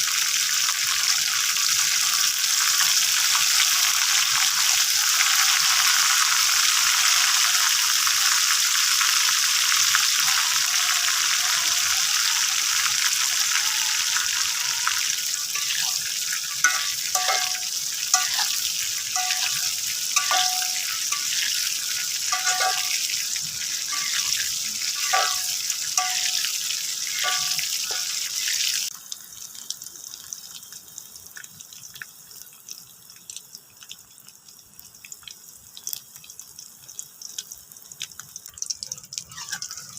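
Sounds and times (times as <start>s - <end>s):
food sizzling in a frying pan: 0.0s - 33.1s, 35.2s - 39.9s
metal spatula clinking on pan: 15.6s - 18.6s, 19.2s - 21.6s, 22.3s - 23.0s, 23.9s - 24.4s, 25.0s - 26.5s, 27.1s - 28.2s.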